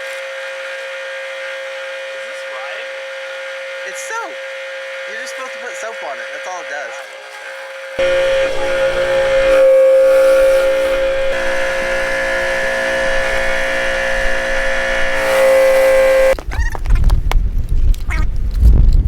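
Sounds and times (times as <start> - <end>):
irregular rumbling: 8.0 - 16.4
pressure washer whining: 8.0 - 16.4.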